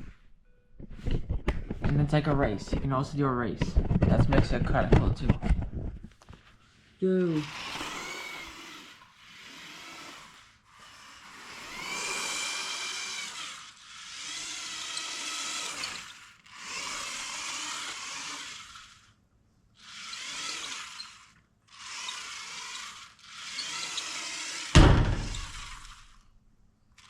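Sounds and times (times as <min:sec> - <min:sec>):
toy car motor and gears whirring: 0:07.0 - 0:26.3.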